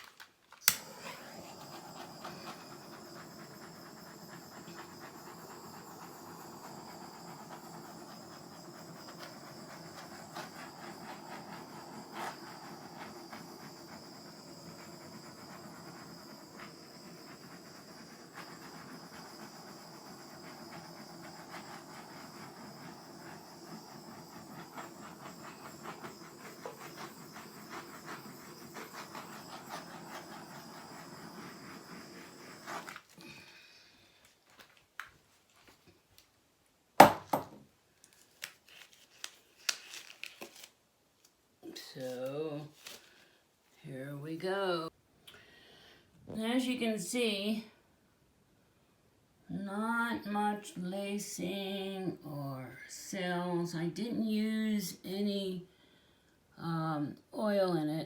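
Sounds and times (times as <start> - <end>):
torch flame hissing: 0.6 - 34.2.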